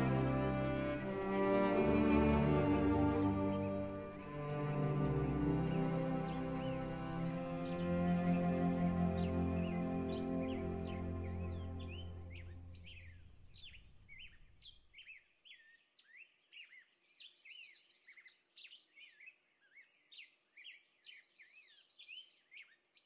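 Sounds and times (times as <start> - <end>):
background music: 0.0 - 13.6
songbirds chirping: 0.0 - 23.0.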